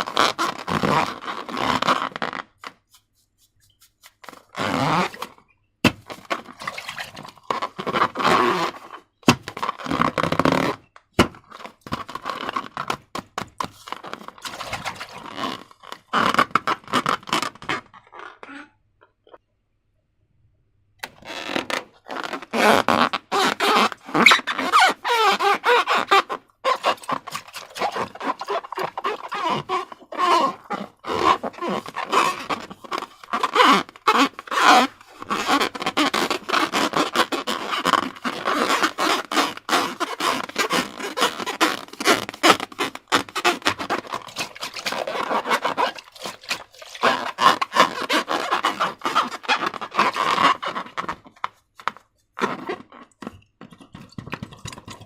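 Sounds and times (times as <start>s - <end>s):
slime squelching against rubber: 0.0s - 10.6s, 11.2s - 18.4s, 21.0s - 55.0s.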